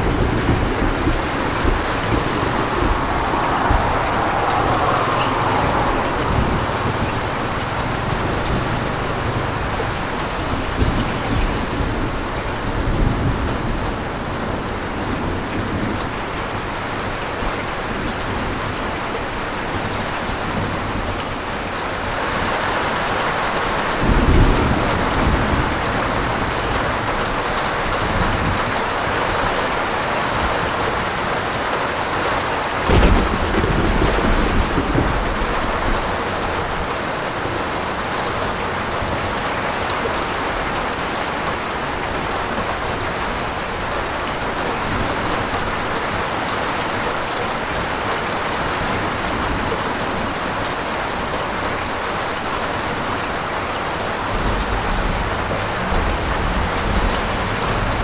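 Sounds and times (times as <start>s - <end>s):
thunder rumbling: 0.0s - 16.2s, 32.7s - 40.7s, 54.2s - 58.0s
steady rain falling: 0.0s - 58.0s.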